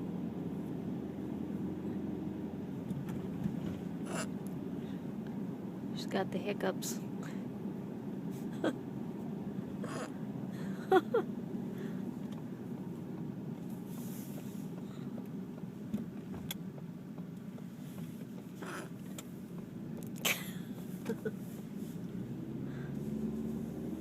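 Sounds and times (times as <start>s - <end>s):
car road rumble: 0.0s - 24.0s
person hiccupping: 9.8s - 10.2s.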